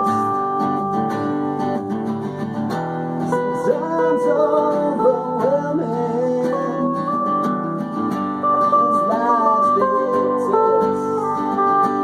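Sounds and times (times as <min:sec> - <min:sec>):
acoustic guitar strummed and plucked: 0:00.0 - 0:12.0
person singing: 0:03.3 - 0:12.0.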